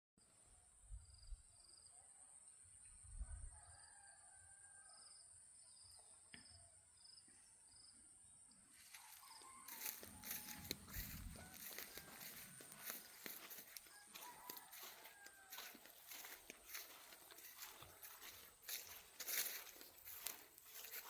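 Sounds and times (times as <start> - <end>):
faint rooster crowing: 3.1 - 5.4, 8.8 - 21.0.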